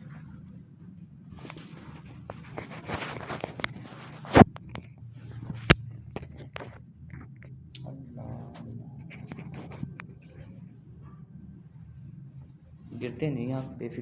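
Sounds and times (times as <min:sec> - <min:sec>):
clothing rustling: 0:00.0 - 0:07.4.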